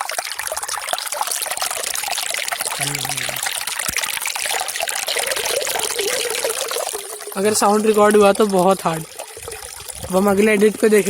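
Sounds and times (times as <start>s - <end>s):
stream trickling over rocks: 0.0s - 11.0s.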